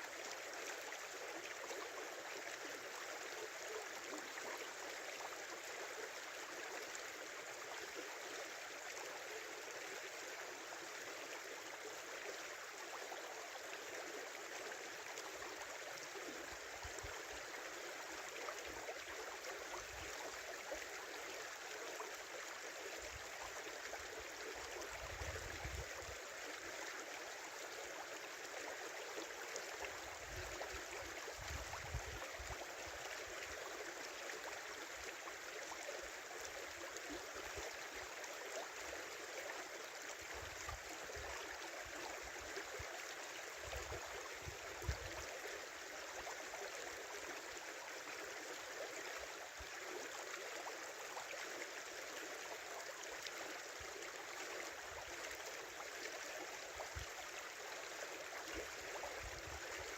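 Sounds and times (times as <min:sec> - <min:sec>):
river water rushing and babbling: 0:00.0 - 0:59.9.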